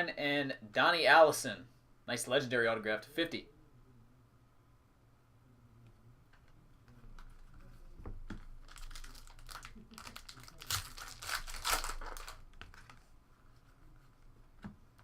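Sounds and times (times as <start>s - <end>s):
foil wrapper crinkling and tearing: 8.6s - 13.0s.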